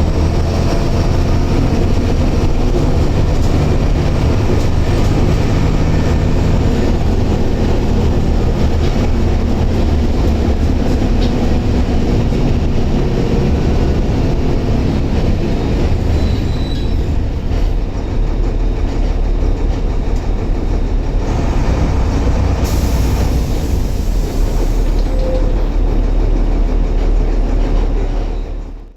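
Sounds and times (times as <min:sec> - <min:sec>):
bus diesel engine rumbling: 0:00.0 - 0:28.9
hiss: 0:22.6 - 0:25.2.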